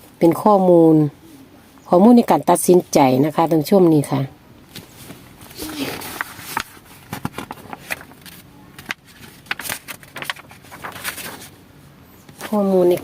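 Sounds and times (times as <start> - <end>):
soft rustles: 4.7 - 11.6.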